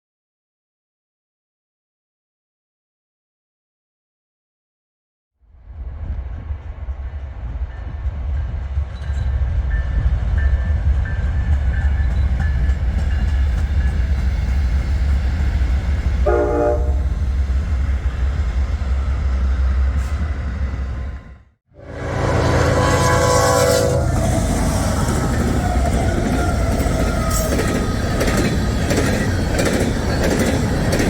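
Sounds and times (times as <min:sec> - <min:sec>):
model train rumbling on track: 0:05.7 - 0:31.0
train horn blast: 0:16.2 - 0:17.2, 0:21.7 - 0:24.7.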